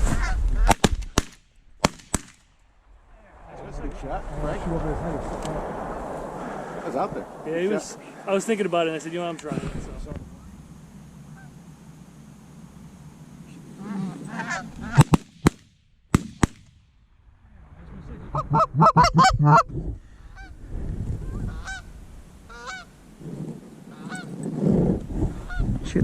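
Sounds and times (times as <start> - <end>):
goose honking: 11.3 - 11.6, 13.8 - 15.0, 18.4 - 19.6, 21.5 - 21.9, 22.5 - 22.9, 23.9 - 24.3.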